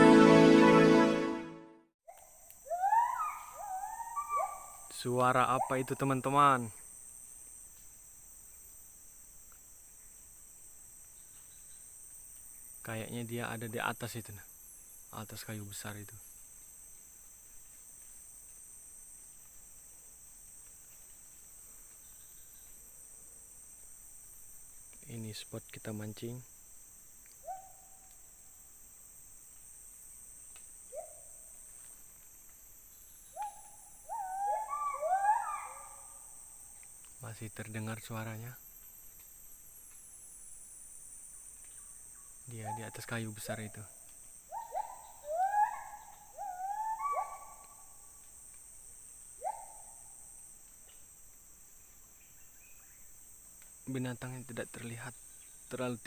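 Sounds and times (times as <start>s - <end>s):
insects droning: 2.1s - 56.0s
animal whistled calls: 2.7s - 4.8s, 33.4s - 36.0s, 44.5s - 47.8s.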